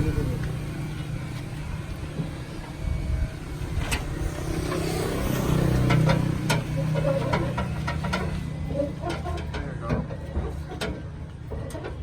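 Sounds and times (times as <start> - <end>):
vehicle engine running: 0.0 - 12.0
sharp clicks and knocks: 5.8 - 8.4.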